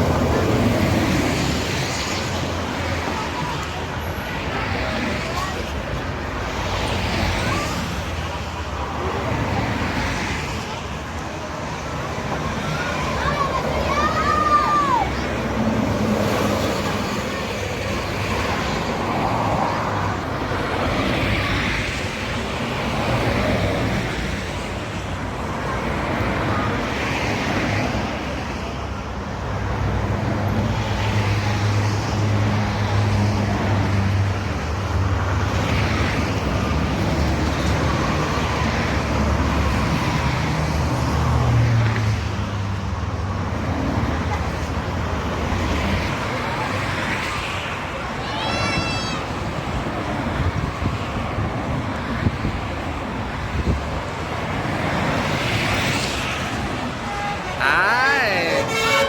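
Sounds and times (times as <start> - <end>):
highway traffic passing: 0.0 - 59.0
heavy vehicle engine hum: 49.2 - 59.0.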